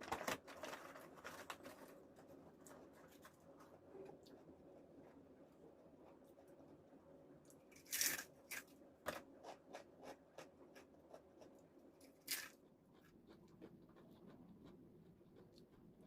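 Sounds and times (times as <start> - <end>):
crunchy chips chewing: 7.7 - 12.6.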